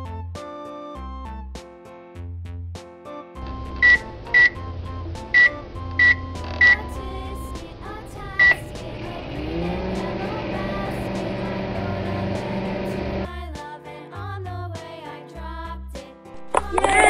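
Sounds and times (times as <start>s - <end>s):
toy microwave humming tone: 3.6s - 4.7s, 5.3s - 7.5s, 8.3s - 13.3s, 16.5s - 17.0s
high-pitched electronic beeps: 3.8s - 4.6s, 5.4s - 6.9s.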